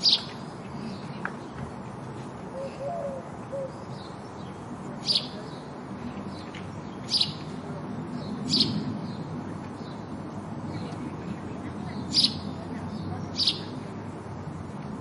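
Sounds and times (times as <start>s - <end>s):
sparrow chirping: 0.0s - 1.1s, 2.6s - 11.0s, 11.6s - 13.9s.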